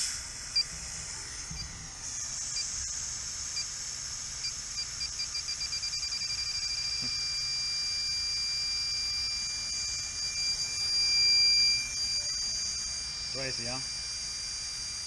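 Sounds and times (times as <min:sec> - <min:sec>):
gas detector beeping: 0:01.5 - 0:01.8, 0:04.4 - 0:15.0.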